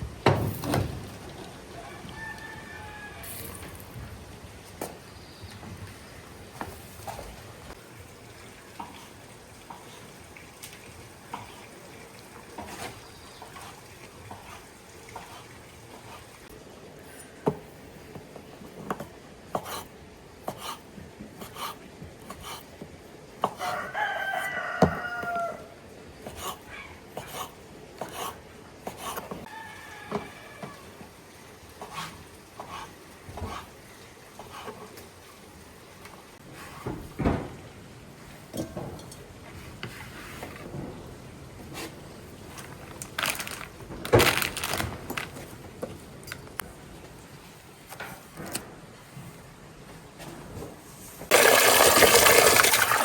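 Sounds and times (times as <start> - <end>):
rooster crowing: 1.7 - 3.7, 23.6 - 25.8, 29.5 - 31.0.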